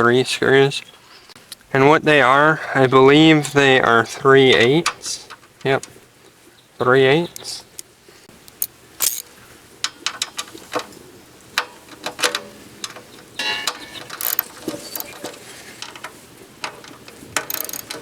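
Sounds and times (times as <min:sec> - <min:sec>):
ratchet wrench clicking: 0:08.5 - 0:09.2, 0:14.2 - 0:15.2, 0:17.4 - 0:18.0
metallic clicks and clinks: 0:08.5 - 0:09.3, 0:12.9 - 0:18.0.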